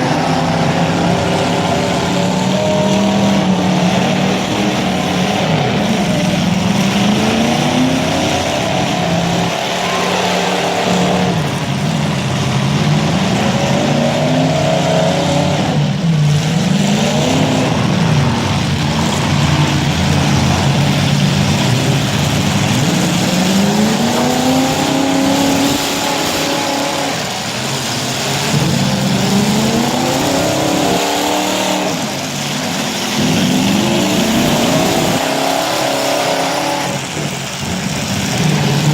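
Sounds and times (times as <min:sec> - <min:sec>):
car engines revving: 0:00.0 - 0:38.9
constant noisy din: 0:00.0 - 0:38.9.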